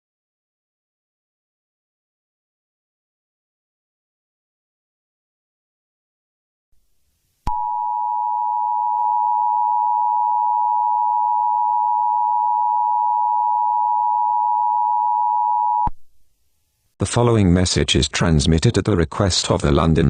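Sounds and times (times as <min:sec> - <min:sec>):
emergency alert two-tone signal: 0:07.5 - 0:15.9.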